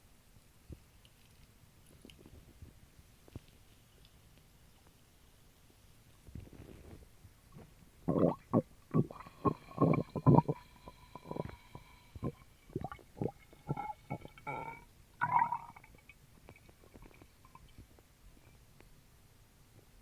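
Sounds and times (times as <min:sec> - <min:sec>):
faint small clicks: 0:00.7 - 0:02.4
stomach gurgling: 0:06.2 - 0:18.0.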